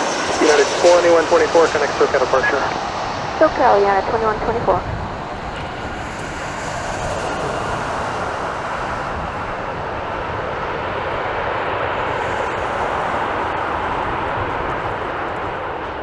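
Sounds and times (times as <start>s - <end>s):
jet airliner passing: 0.0s - 16.0s.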